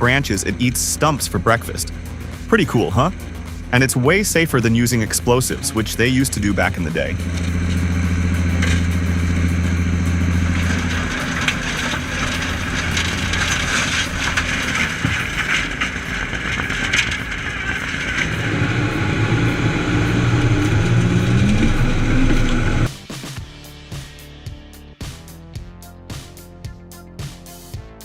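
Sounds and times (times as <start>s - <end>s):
stump grinder grinding wood: 0.0s - 22.9s.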